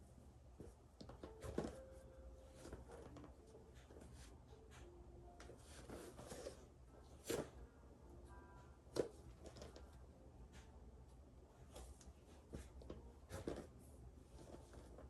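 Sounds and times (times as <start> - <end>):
clothing rustling and soft thumps: 0.5 - 7.6, 11.5 - 15.0.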